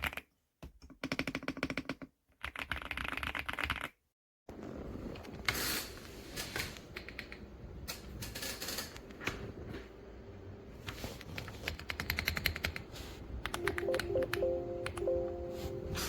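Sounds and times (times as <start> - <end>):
mechanical keyboard typing: 0.8 - 4.0, 11.2 - 12.8, 13.4 - 15.1.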